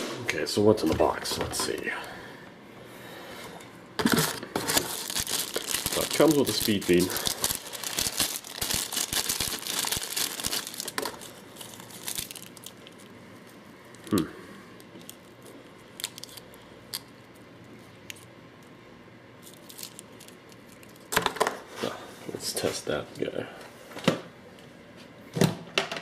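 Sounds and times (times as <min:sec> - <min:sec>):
plastic packaging crinkling: 0:04.0 - 0:14.2, 0:14.8 - 0:17.1, 0:19.4 - 0:21.2.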